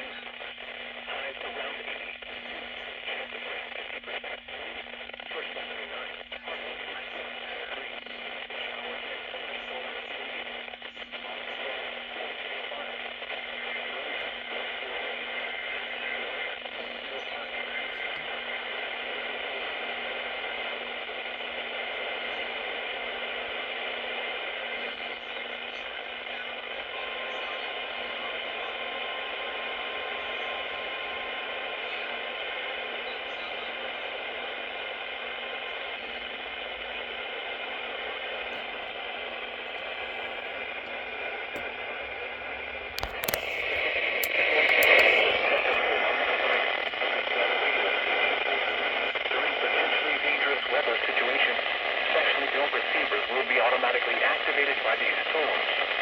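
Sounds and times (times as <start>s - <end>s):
radio static hiss: 0.0s - 56.0s
sharp clicks: 42.8s - 45.9s.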